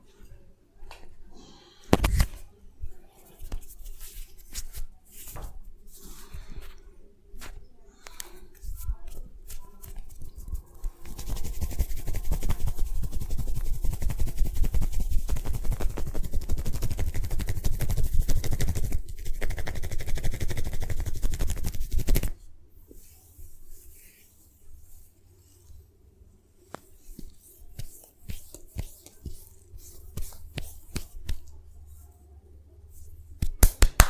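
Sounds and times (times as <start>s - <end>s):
crackling massage strokes: 8.7s - 22.4s, 23.0s - 32.2s.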